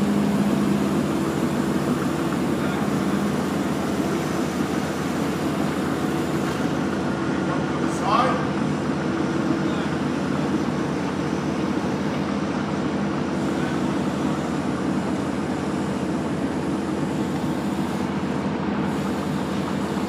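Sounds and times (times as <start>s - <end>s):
machine running with low hum: 0.0s - 20.0s.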